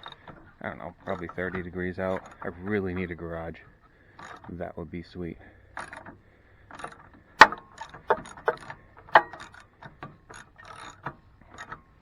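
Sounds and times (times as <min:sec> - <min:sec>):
metal clinks and knocks: 0:00.0 - 0:04.6, 0:05.7 - 0:12.0
ratchet wrench clicking: 0:05.8 - 0:11.8.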